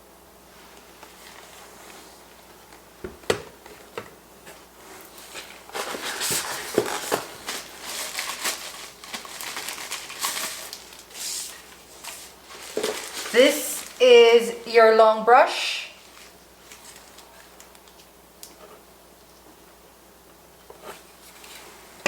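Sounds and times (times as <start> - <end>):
plastic wrapping crinkling: 5.2 - 14.7, 16.0 - 18.1.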